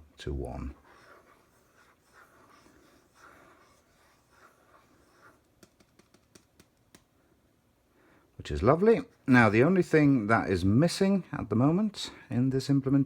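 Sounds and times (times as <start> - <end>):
pen stylus scratching tablet: 0.5 - 6.2.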